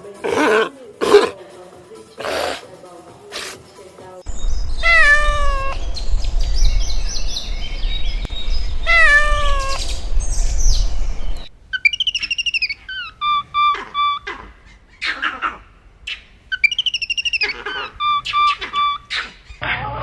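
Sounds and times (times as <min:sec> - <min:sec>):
low rumble: 0:04.3 - 0:11.5
cat meowing: 0:04.8 - 0:05.8, 0:08.9 - 0:09.8
high-pitched cat mews: 0:04.8 - 0:05.8, 0:08.9 - 0:09.8.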